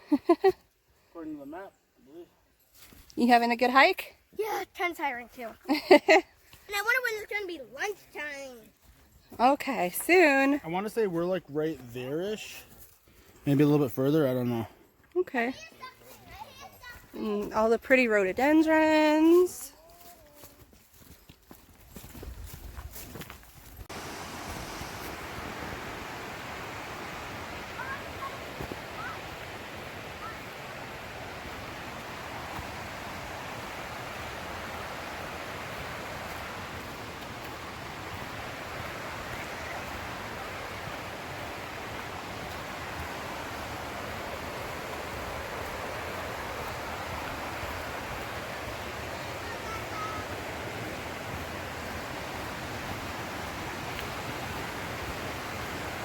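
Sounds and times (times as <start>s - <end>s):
waterfall rushing hiss: 23.9s - 56.0s.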